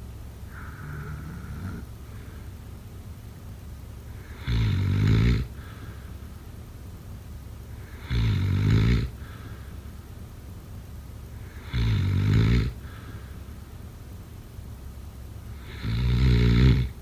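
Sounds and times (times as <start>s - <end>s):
faint breath: 0.0s - 2.9s, 5.4s - 6.7s, 9.0s - 10.4s, 12.7s - 14.2s
loud rattling snores: 0.5s - 2.5s, 4.1s - 6.1s, 7.7s - 9.8s, 11.3s - 13.4s, 15.5s - 17.0s.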